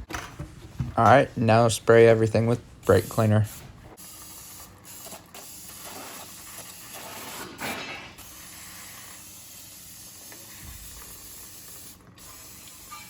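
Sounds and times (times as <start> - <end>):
aerosol spray hissing: 8.2 - 13.0.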